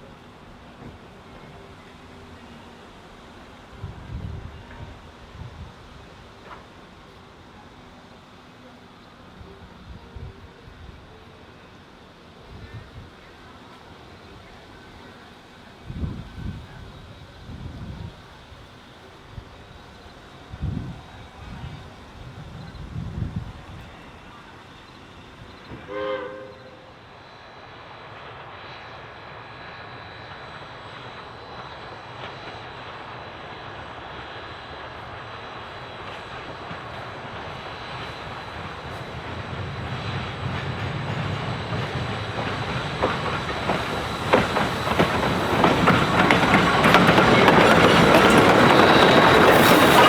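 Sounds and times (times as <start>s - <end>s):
train approaching: 0.0s - 50.0s
train whistle blast: 25.7s - 27.1s
train wheels clicking over rail joints: 36.0s - 50.0s.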